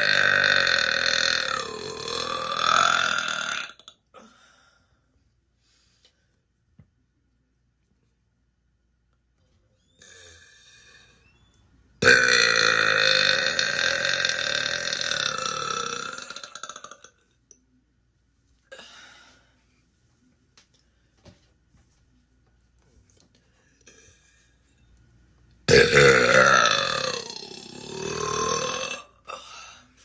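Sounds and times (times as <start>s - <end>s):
woman burping loudly: 0.0s - 4.0s, 12.0s - 17.2s, 25.7s - 29.5s.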